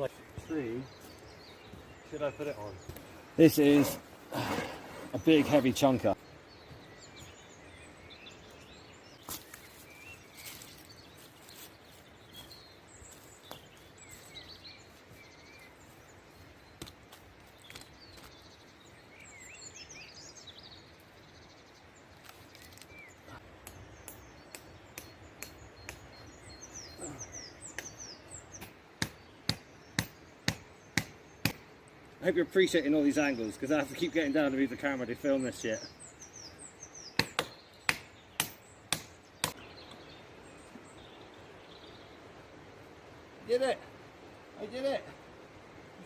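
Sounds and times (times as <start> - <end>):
birds chirping: 0.0 - 46.0
sharp knocks: 37.2 - 39.6.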